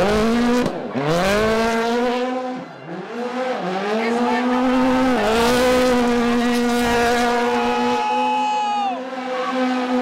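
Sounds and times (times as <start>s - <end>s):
rally car engine at high revs: 0.0s - 10.0s.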